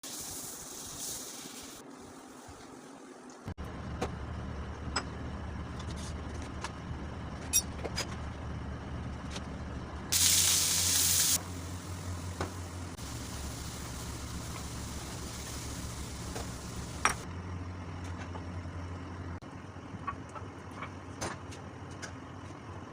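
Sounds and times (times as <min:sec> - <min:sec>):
loud hiss: 0:00.0 - 0:02.3, 0:10.2 - 0:17.2.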